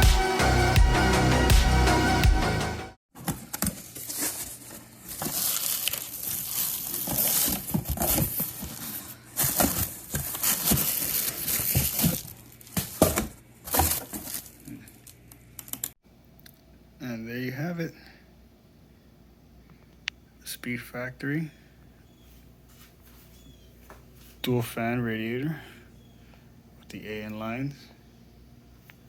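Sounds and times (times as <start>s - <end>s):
packaging crinkling and tearing: 3.4s - 15.9s.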